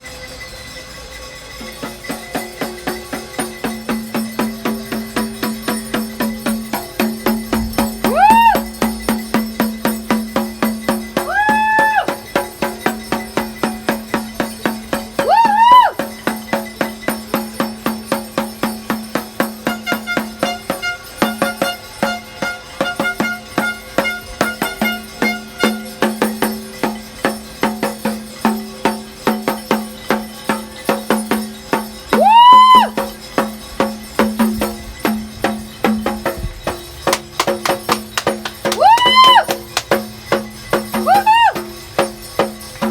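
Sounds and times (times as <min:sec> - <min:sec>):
rhythmic hand clapping: 0:37.1 - 0:40.3.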